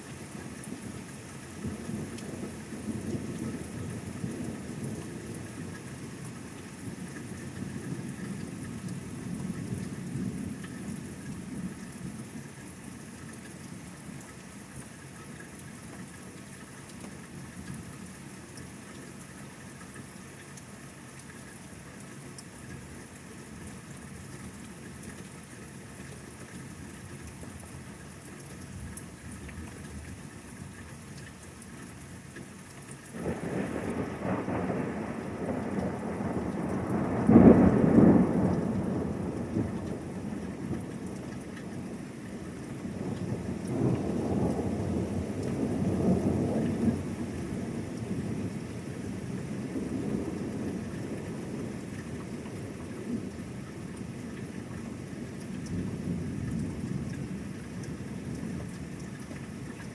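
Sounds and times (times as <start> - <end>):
steady rain: 0.0 - 59.9
thunder rumbling: 33.2 - 53.3.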